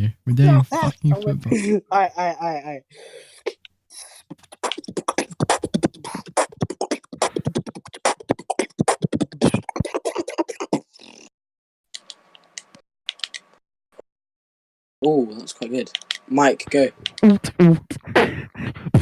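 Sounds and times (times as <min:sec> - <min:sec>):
beatboxing: 0:03.5 - 0:11.3, 0:17.2 - 0:19.0.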